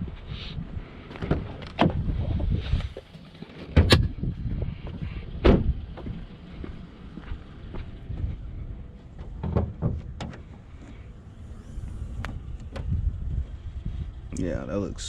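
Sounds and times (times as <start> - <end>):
car hood latch clunks: 3.7 - 4.1
low rumble: 3.8 - 15.0.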